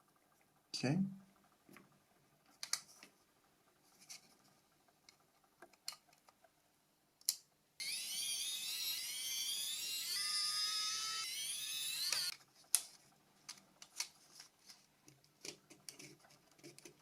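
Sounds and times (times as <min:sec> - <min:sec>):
high wavering tone: 0:07.8 - 0:12.3.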